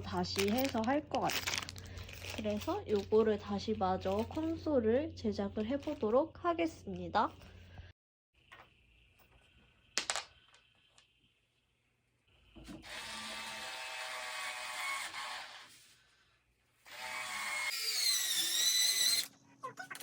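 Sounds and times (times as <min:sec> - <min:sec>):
electric drill driving screws: 0:12.8 - 0:15.7, 0:16.8 - 0:19.3.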